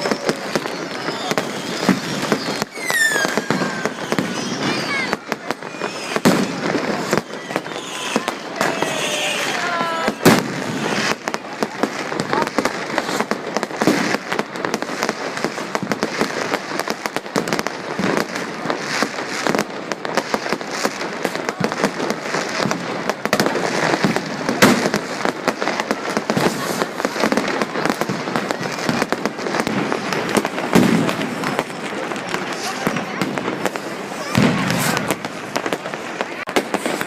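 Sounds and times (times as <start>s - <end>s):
loud firework bang: 0.0s - 14.8s, 22.6s - 25.1s, 26.3s - 37.0s
fireworks crackling and banging: 0.0s - 37.0s.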